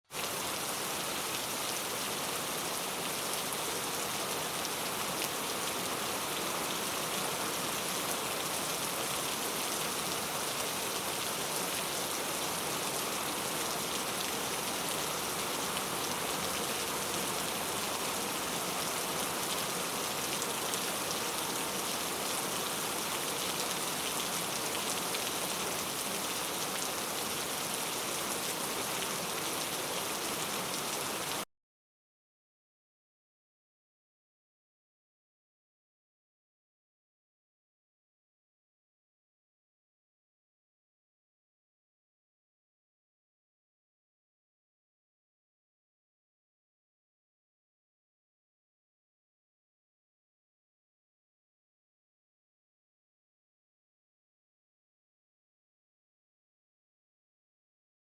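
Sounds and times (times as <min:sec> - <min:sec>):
steady rain falling: 0:00.1 - 0:31.4.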